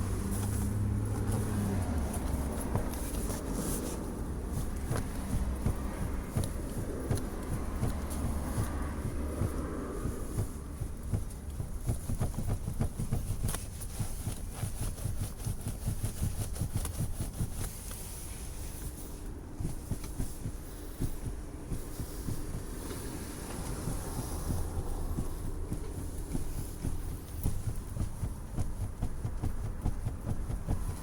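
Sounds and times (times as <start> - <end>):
car rumbling on road: 0.0 - 31.0
car seat knocking and rattling: 0.0 - 31.0.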